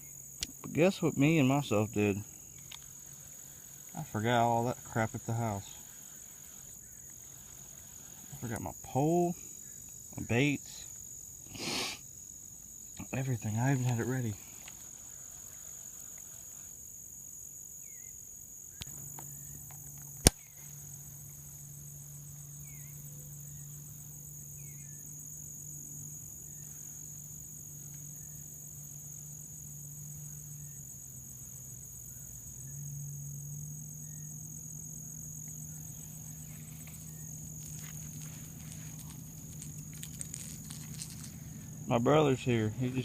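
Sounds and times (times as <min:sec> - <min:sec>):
insects chirring: 0:00.0 - 0:43.0
sharp click: 0:19.8 - 0:20.5.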